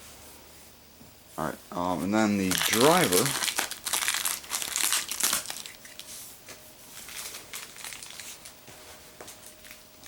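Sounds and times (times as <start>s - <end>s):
plastic wrapper crinkling: 2.4s - 6.1s, 7.0s - 8.6s.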